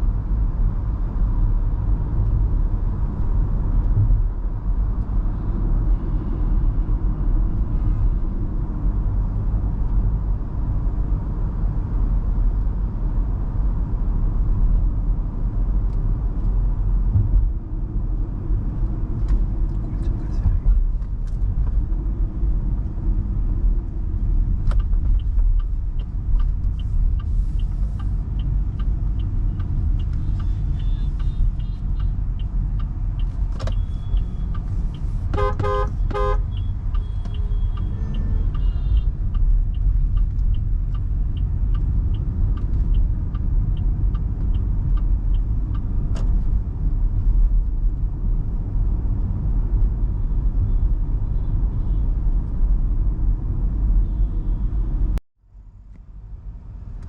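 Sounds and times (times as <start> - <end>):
road rumble inside car: 0.0 - 57.0
turn signal ticking: 15.2 - 54.2
car horn toots: 30.5 - 32.1, 35.3 - 39.1.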